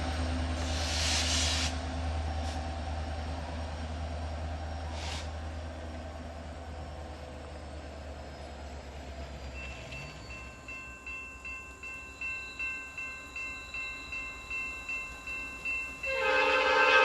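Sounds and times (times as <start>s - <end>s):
crossing bell ringing: 9.3s - 17.0s
locomotive horn: 16.1s - 17.0s.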